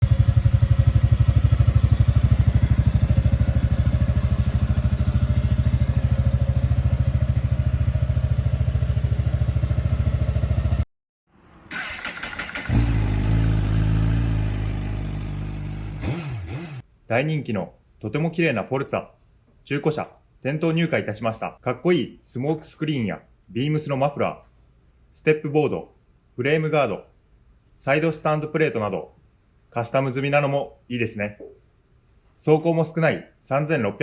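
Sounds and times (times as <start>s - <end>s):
scooter engine idling: 0.0s - 10.8s, 11.8s - 16.8s.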